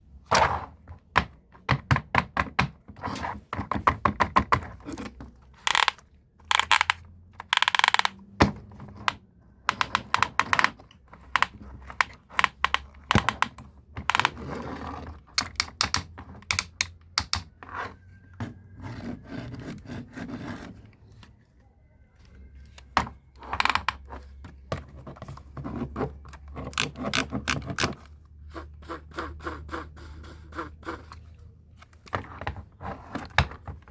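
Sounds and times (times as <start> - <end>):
toy and packaging being handled: 3.4 - 28.3.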